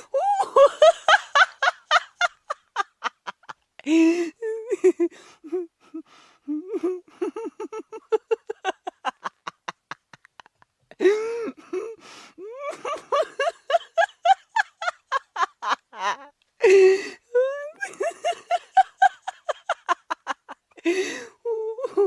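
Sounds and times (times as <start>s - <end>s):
person laughing: 0.0s - 22.0s
drawn-out voiced breath: 5.1s - 6.6s, 11.0s - 12.5s, 16.6s - 17.3s, 20.8s - 21.5s.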